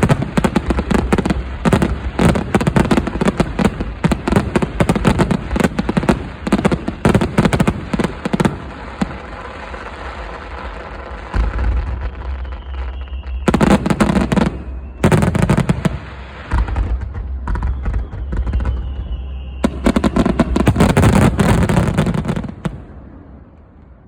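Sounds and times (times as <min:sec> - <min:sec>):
fireworks crackling and popping: 0:00.0 - 0:23.7
faint high firework whistle: 0:00.0 - 0:24.0.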